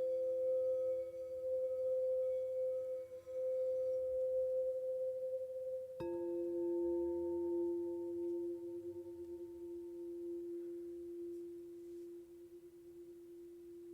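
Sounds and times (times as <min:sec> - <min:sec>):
singing bowls ringing: 0:00.0 - 0:13.9
singing bowl struck: 0:06.0 - 0:13.2.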